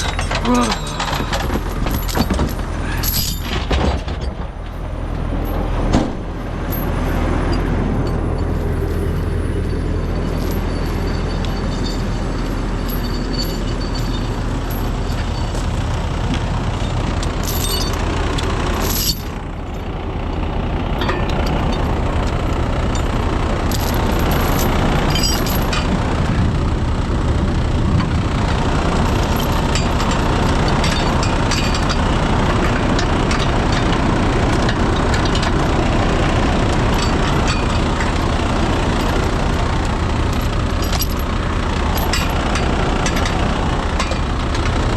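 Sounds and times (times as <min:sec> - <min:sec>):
metallic chain clinks: 0:00.0 - 0:03.6, 0:06.7 - 0:15.8, 0:16.8 - 0:18.0, 0:18.8 - 0:19.4, 0:23.7 - 0:25.9, 0:29.1 - 0:32.0, 0:36.9 - 0:38.2, 0:40.2 - 0:43.3
diesel engine running: 0:00.0 - 0:44.9.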